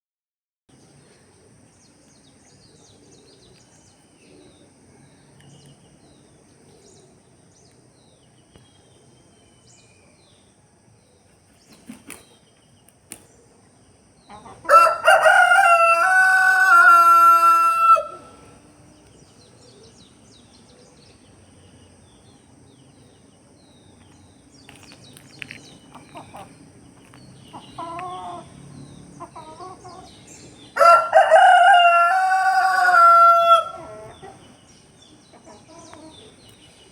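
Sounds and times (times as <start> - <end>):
rooster crowing: 14.6 - 18.5, 30.8 - 34.4.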